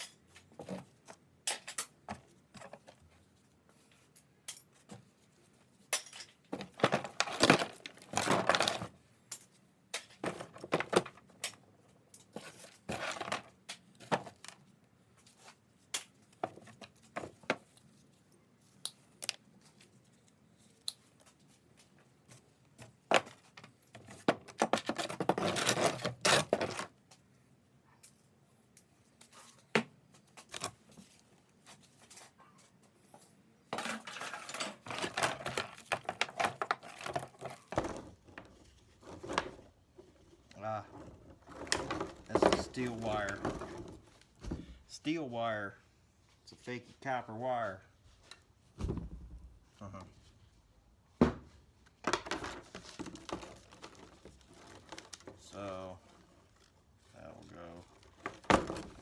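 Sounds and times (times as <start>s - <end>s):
scrap metal clinking and rattling: 5.8s - 13.5s, 33.7s - 40.2s.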